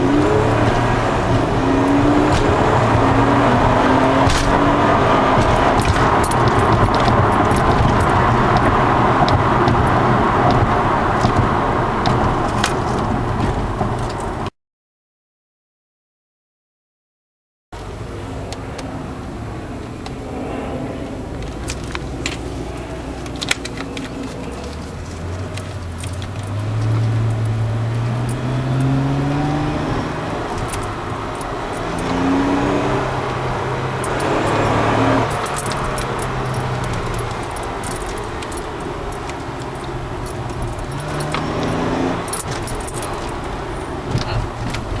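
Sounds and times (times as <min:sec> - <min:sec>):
light jingling clicks: 0:00.0 - 0:10.6, 0:21.3 - 0:45.0
car engine revving: 0:00.0 - 0:14.4, 0:17.8 - 0:45.0.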